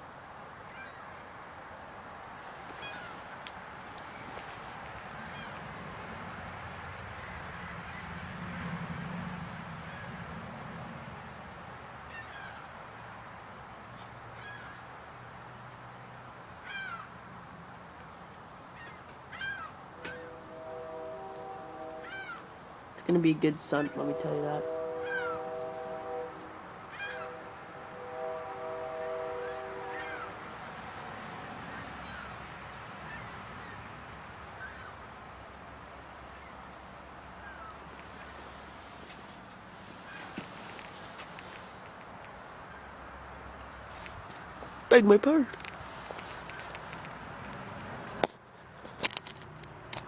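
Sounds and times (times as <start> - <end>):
outdoor background noise: 0.0 - 50.0
bird calling: 2.7 - 3.3, 18.8 - 22.7, 23.7 - 30.8, 37.3 - 38.3
steady low hum: 19.9 - 31.1
locomotive air horn chord: 19.9 - 32.0.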